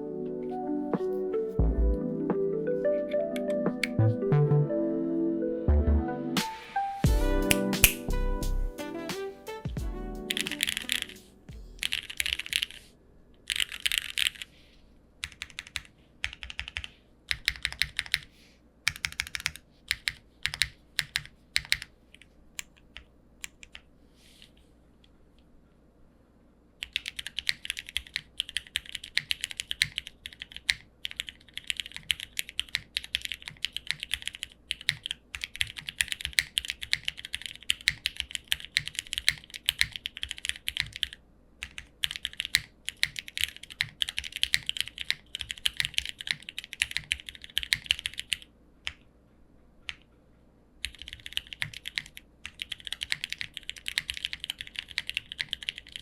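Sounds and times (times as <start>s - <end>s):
fast typing on mechanical keyboard: 10.3s - 11.1s, 11.8s - 12.8s, 13.5s - 14.5s, 15.2s - 18.3s, 18.9s - 21.9s, 26.8s - 48.5s, 50.8s - 56.0s.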